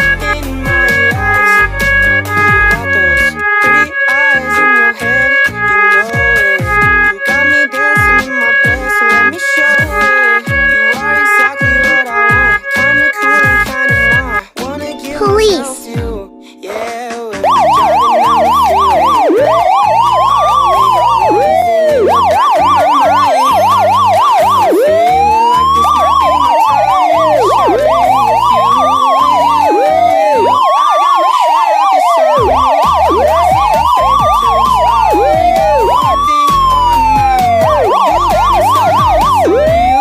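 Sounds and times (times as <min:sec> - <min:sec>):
toy car electronic siren: 0:00.0 - 0:14.4, 0:15.1 - 0:15.6, 0:17.4 - 0:40.0.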